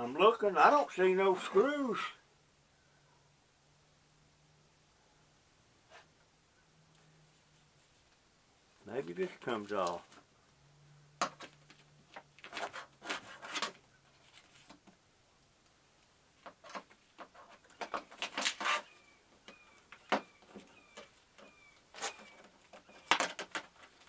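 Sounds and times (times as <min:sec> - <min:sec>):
plastic and metal parts clattering: 0:11.2 - 0:14.9, 0:16.4 - 0:24.0
bird chirping: 0:17.6 - 0:23.4.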